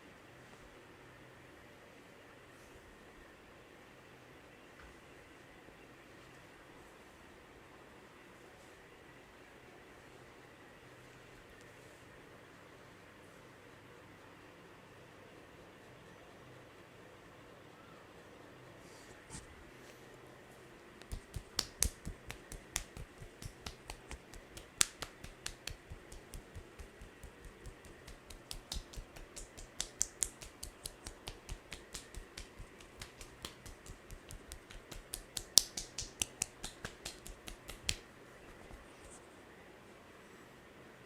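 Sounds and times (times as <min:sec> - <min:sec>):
hands snapping claps on head: 0:21.0 - 0:38.1.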